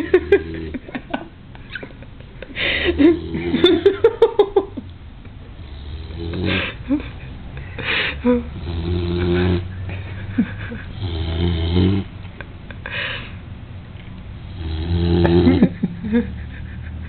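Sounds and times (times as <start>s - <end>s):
low snoring: 5.6s - 6.8s, 8.5s - 9.7s, 10.9s - 12.1s, 14.4s - 15.8s.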